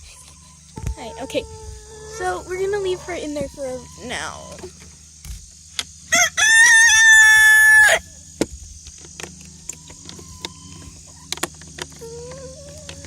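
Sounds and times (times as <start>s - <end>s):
rooster crowing: 6.1s - 8.2s.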